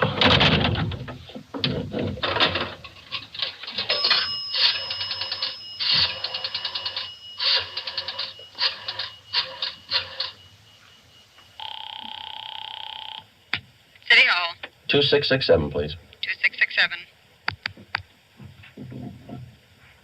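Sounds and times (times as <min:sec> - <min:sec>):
thin steady tone: 0:02.8 - 0:14.0.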